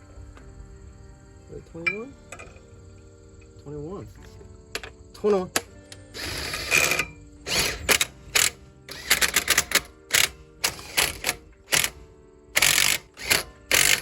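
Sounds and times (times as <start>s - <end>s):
ratchet clicking: 5.9s - 12.0s, 12.6s - 14.0s.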